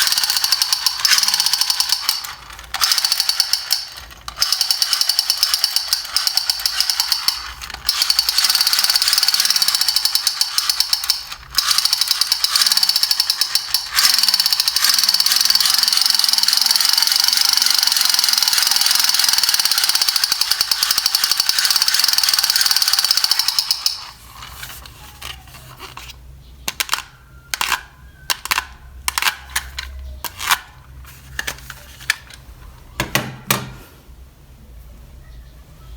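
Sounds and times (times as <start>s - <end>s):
toy gun electronic firing rattle: 0.0s - 26.1s, 26.7s - 30.8s
sharp clicks and taps: 24.7s - 30.7s.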